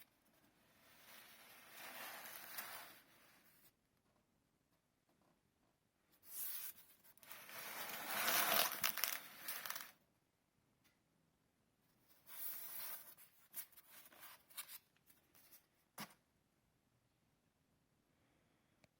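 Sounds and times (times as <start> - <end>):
packaging crinkling: 7.5 - 9.9
packaging tearing: 7.5 - 9.9.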